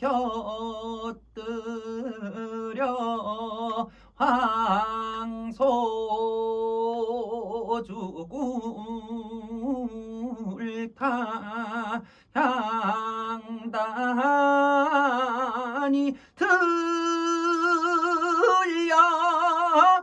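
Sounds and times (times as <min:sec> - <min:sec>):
man singing unaccompanied: 0:00.0 - 0:20.0
short breaths: 0:03.9 - 0:04.2, 0:12.0 - 0:12.4, 0:16.1 - 0:16.4.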